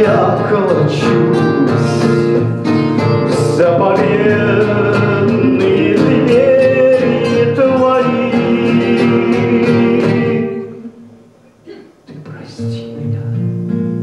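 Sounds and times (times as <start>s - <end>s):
man singing: 0.0s - 2.5s, 3.2s - 11.0s
strummed acoustic guitar: 0.0s - 11.1s, 12.2s - 14.0s.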